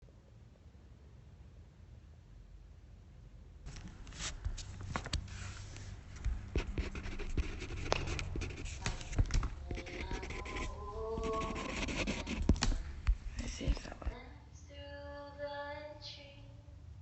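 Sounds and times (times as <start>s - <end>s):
scratching and rustling: 3.7s - 14.2s.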